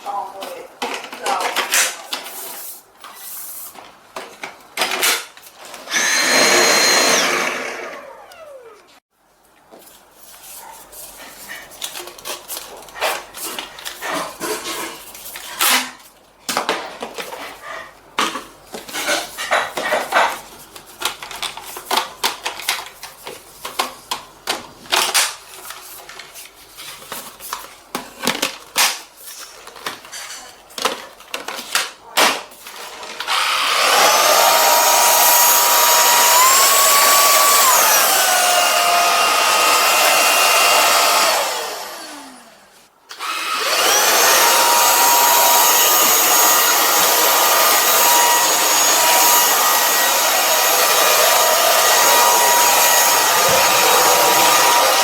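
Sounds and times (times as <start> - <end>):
stick vacuum whine: 5.8 - 8.9, 33.1 - 55.0.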